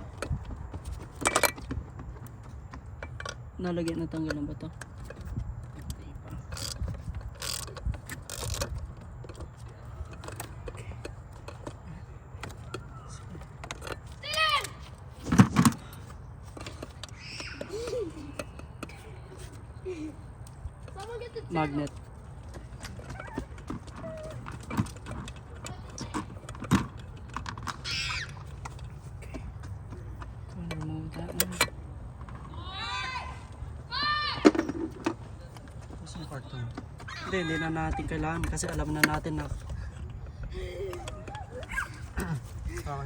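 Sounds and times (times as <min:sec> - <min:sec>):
hand tools clicking and tapping: 0:00.0 - 0:32.4, 0:36.8 - 0:43.0
metal tools clinking: 0:00.9 - 0:01.8, 0:02.9 - 0:14.9.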